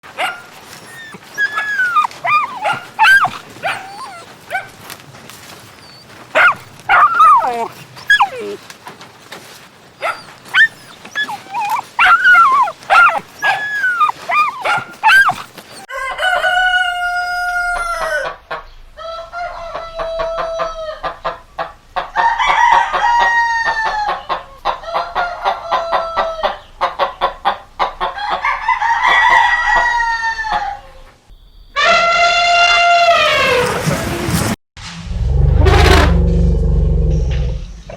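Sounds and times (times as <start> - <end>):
chickens clucking: 0.0 - 15.9
rooster crowing: 0.2 - 4.7, 5.8 - 8.6, 10.1 - 18.4, 19.0 - 21.1, 22.2 - 26.6, 28.2 - 31.0.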